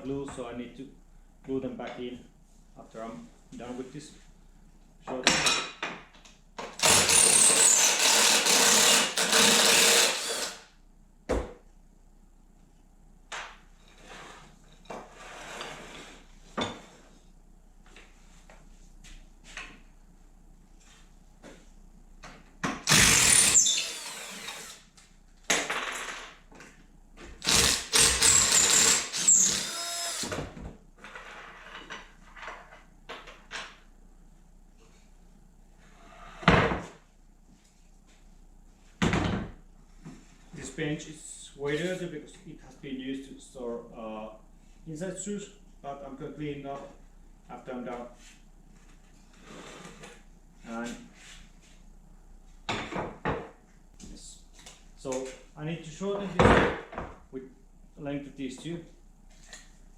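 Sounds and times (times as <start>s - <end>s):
electric drill running: 6.8s - 10.6s, 22.8s - 24.9s, 27.4s - 30.4s.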